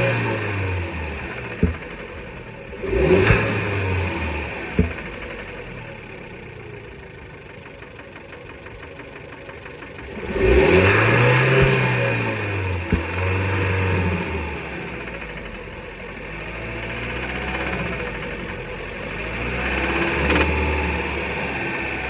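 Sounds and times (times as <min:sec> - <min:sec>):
car engine idling and revving: 0:00.0 - 0:22.0
engine knock: 0:00.0 - 0:22.0.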